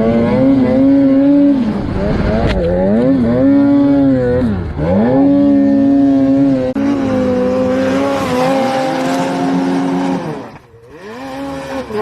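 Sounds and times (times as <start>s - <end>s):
snowmobile engine revving: 0.0s - 12.0s.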